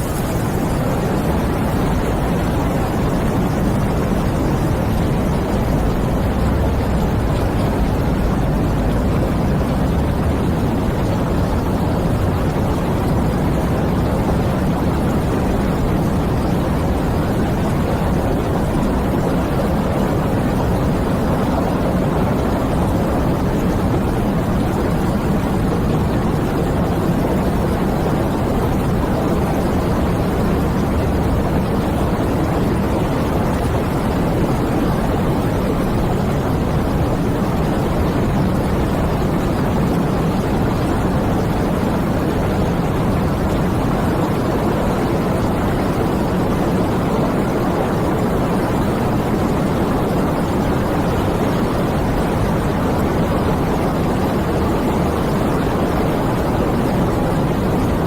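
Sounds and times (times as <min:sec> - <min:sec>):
wind rushing: 0:00.0 - 0:14.0
steady rush of wind: 0:00.0 - 0:58.0.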